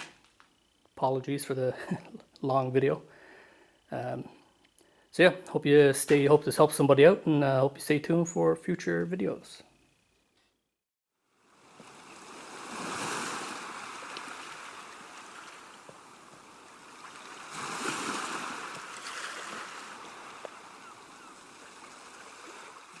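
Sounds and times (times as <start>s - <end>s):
waves washing in: 11.4s - 23.0s.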